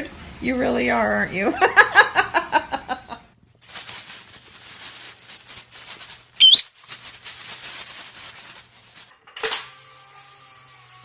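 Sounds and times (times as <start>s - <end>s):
wavering whistle: 6.4s - 6.7s.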